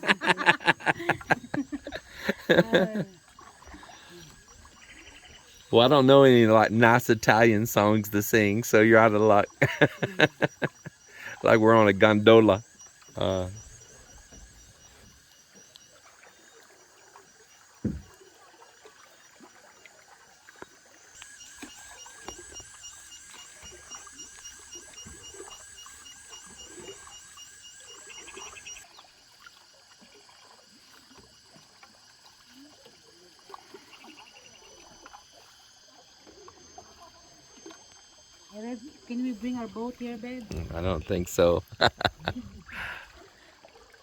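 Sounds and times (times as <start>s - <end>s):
canoe paddles splashing: 0.0s - 44.0s
insects trilling: 0.0s - 44.0s
low thump: 17.8s - 18.2s.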